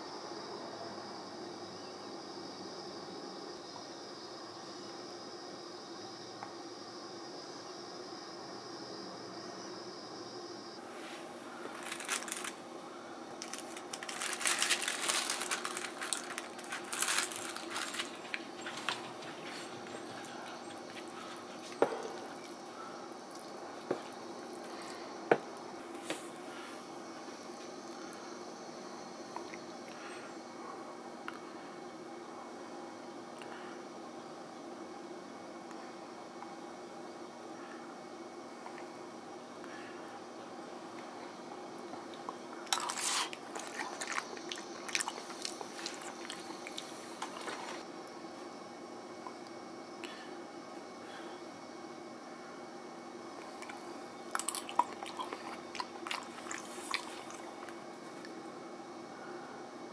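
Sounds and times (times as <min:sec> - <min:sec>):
steady low hum: 0:00.0 - 0:59.9
crackling and clicking: 0:13.4 - 0:22.7.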